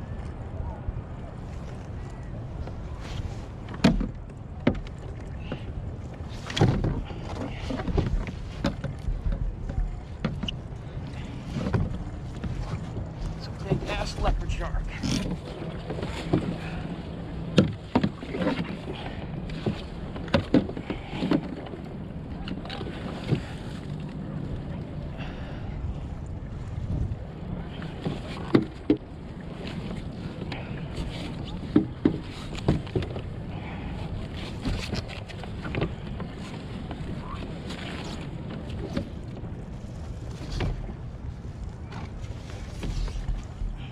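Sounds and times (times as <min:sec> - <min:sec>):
water noise: 0:00.0 - 0:43.9
knocks and bumps on kayak: 0:02.6 - 0:23.9, 0:26.9 - 0:39.5
knocks on kayak: 0:03.1 - 0:04.8
wind noise: 0:25.2 - 0:28.3.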